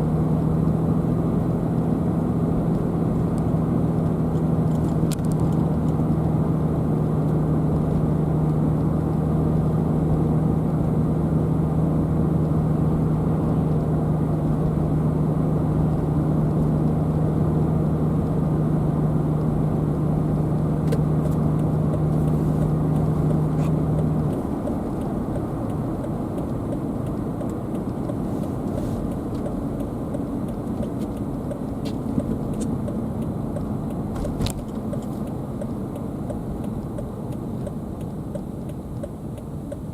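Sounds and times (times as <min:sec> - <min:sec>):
car road and engine noise: 0:00.0 - 0:39.9.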